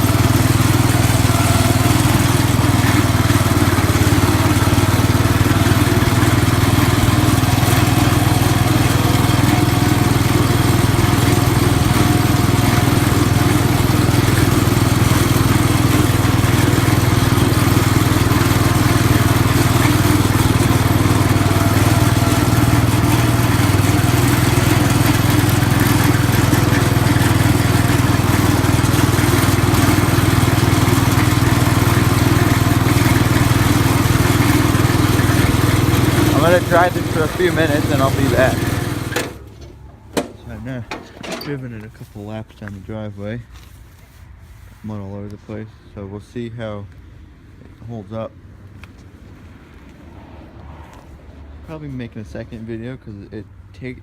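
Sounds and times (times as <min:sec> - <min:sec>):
garden tractor engine running: 0:00.0 - 0:45.4.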